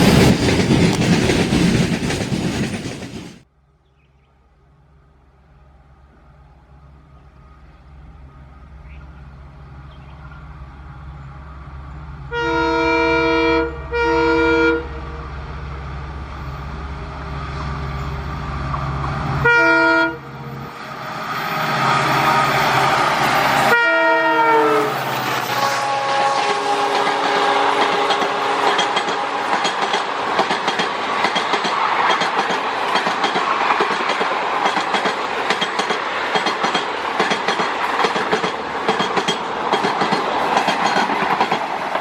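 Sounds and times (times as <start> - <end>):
diesel locomotive rumbling: 0.0 - 3.5, 4.5 - 42.0
train rushing past: 0.0 - 3.5, 5.9 - 42.0
train air horn blasts: 12.3 - 15.4, 19.4 - 20.5, 21.9 - 29.6.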